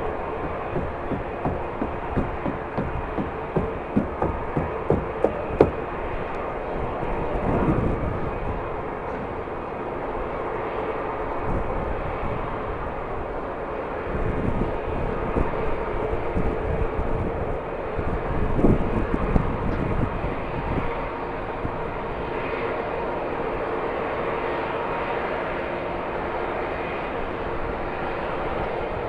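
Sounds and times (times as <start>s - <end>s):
wind buffeting microphone: 0.0s - 9.4s.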